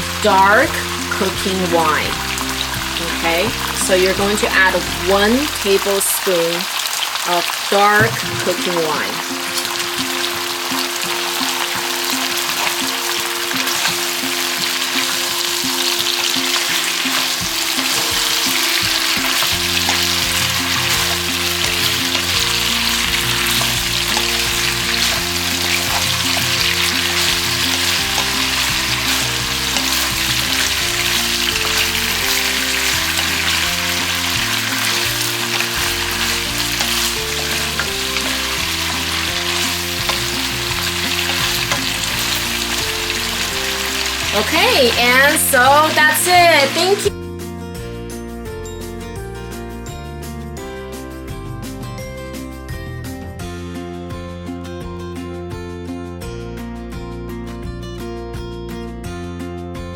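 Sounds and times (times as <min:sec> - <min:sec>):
chicken sizzling in a pan: 0:00.0 - 0:47.1
background music: 0:00.0 - 0:59.9.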